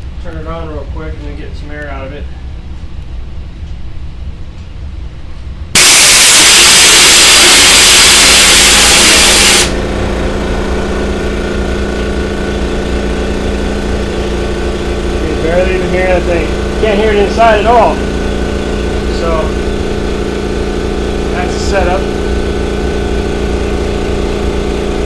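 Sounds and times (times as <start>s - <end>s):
air compressor pump running: 5.7s - 25.0s
compressed air hissing: 5.8s - 9.8s.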